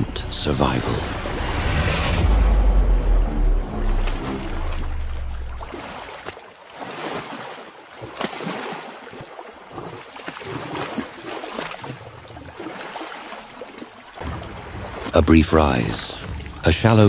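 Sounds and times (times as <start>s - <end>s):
water splashing and sloshing: 0.0s - 17.0s.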